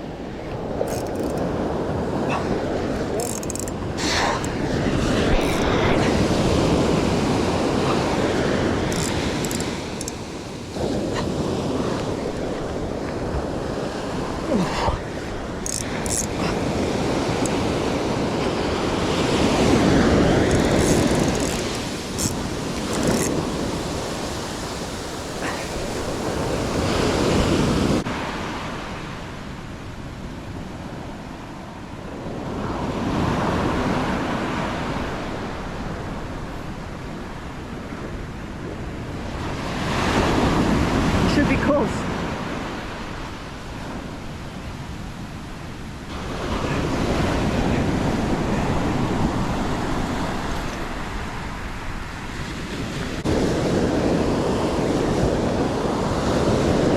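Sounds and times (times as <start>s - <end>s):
wind buffeting microphone: 0.0s - 28.1s, 42.4s - 56.9s
ocean surf washing ashore: 0.0s - 56.9s.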